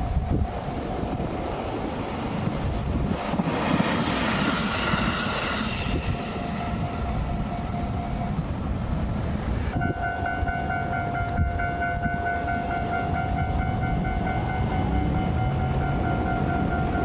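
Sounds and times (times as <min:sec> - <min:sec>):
train wheels rumbling: 0:00.0 - 0:17.0.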